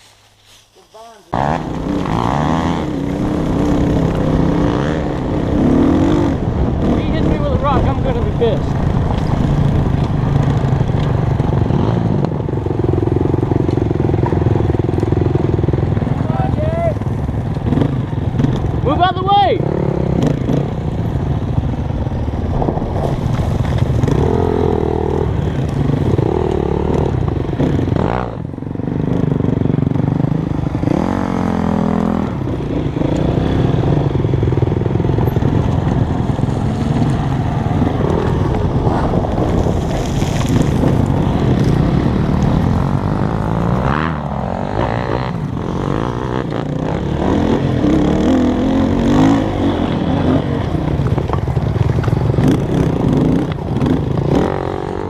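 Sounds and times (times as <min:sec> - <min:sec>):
dirt bike engine revving: 0:00.9 - 0:55.0.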